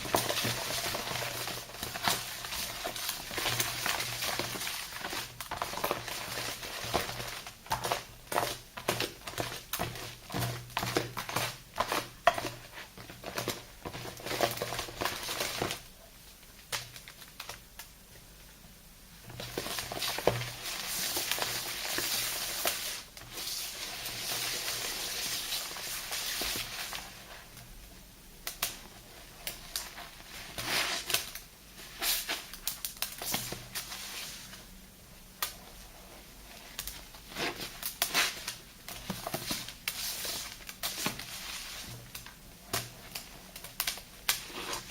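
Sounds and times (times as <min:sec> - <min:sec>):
steady hiss: 0:00.0 - 0:08.8, 0:14.9 - 0:44.9
wet crackling squishes of lather: 0:42.8 - 0:44.9.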